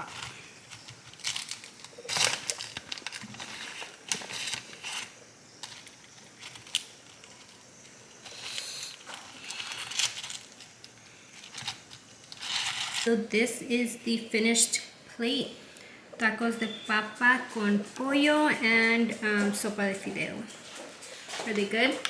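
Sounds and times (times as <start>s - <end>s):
crinkling and rustling: 0.0s - 13.3s.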